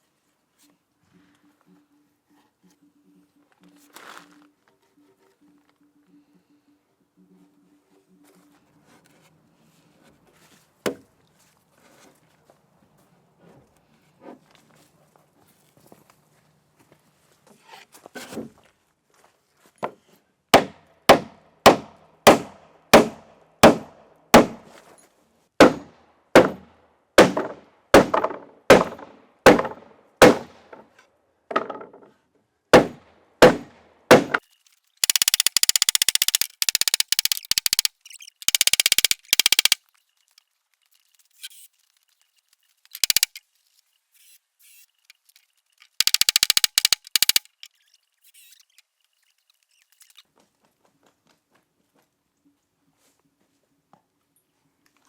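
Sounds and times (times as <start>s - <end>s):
hammer striking timber: 20.6s - 24.7s, 25.6s - 30.9s, 32.8s - 34.4s
rapid rattling bursts: 34.1s - 50.2s.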